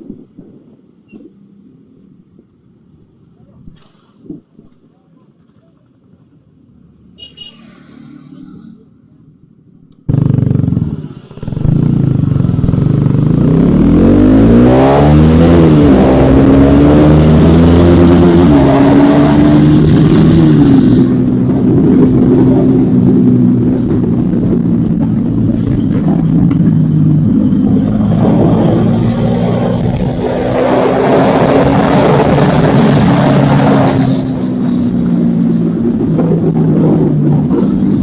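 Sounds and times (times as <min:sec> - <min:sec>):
motorcycle accelerating: 0:09.9 - 0:38.0.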